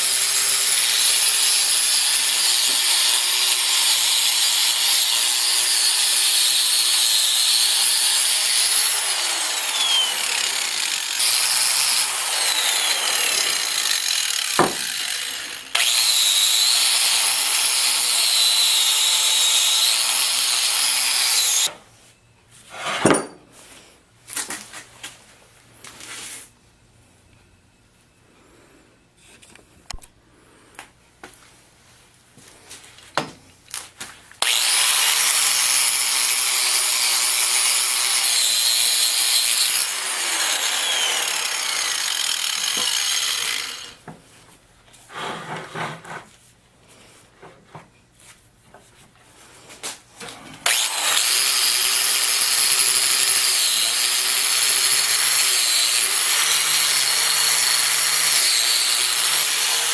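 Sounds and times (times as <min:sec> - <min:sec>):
power tool grinding metal: 0:00.0 - 0:21.7, 0:34.4 - 0:44.0, 0:50.6 - 0:59.9.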